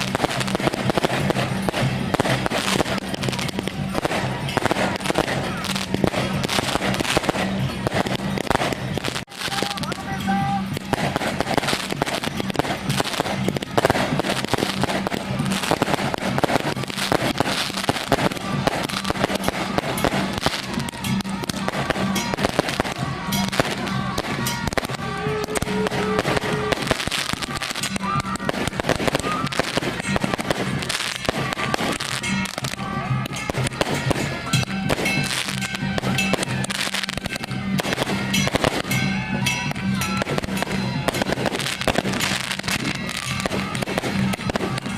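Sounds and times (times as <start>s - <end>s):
firecrackers crackling: 0.0s - 44.9s
low music: 0.0s - 44.9s.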